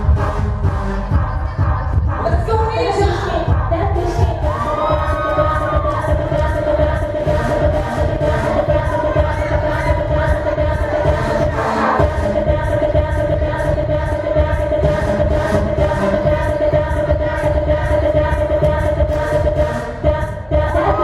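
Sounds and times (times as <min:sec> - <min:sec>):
dance music with steady beat: 0:00.0 - 0:21.0.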